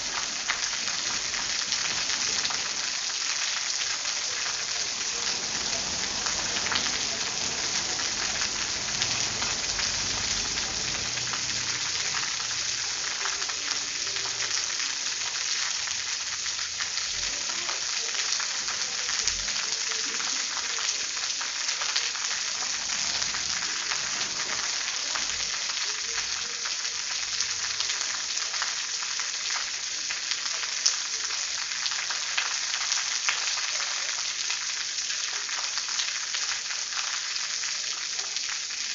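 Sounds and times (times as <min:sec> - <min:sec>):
sharp water drips: 0:00.0 - 0:37.4
steady rain falling: 0:00.0 - 0:38.9.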